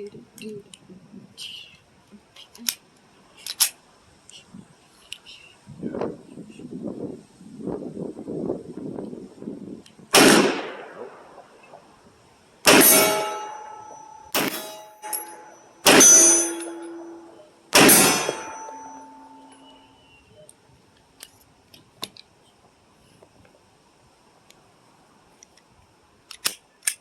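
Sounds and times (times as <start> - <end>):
gunshots with long echo: 10.2 - 11.9, 12.6 - 19.5
metallic ringing tones: 12.7 - 20.2
small clicks: 26.3 - 27.0.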